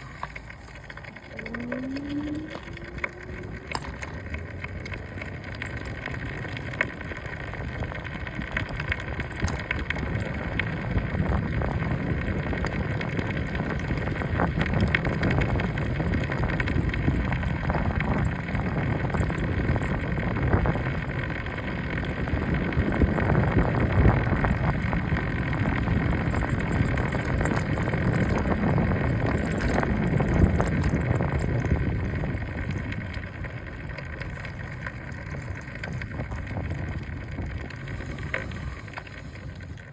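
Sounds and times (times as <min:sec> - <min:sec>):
front wheel rattle clicks: 0:00.0 - 0:39.9
low rumbling road noise: 0:00.0 - 0:39.9.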